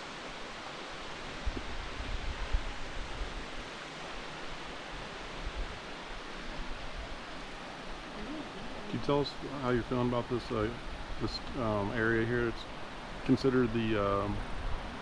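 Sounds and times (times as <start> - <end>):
wind buffeting microphone: 1.3 - 3.6.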